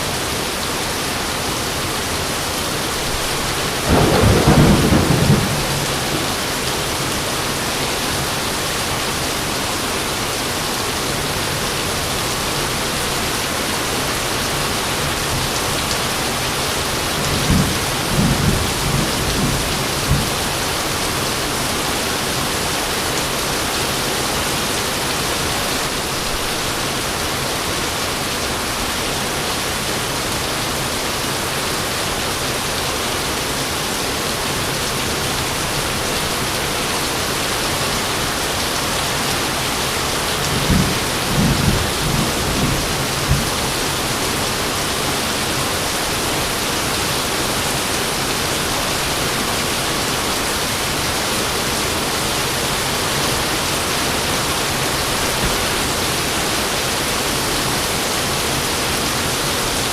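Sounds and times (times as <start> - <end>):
steady rain pouring: 0.0 - 59.9
thunder rumbling: 3.1 - 7.3, 17.2 - 20.8, 40.4 - 44.0.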